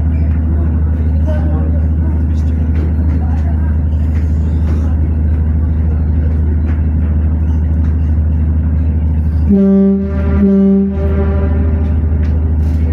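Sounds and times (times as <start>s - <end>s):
low engine drone: 0.0s - 12.9s
deep horn blasts: 9.5s - 12.9s.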